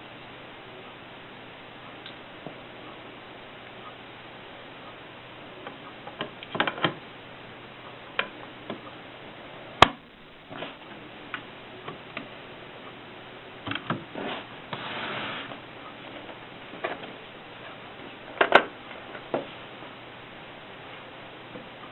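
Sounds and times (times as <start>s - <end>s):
scraping rustle: 14.1s - 16.3s.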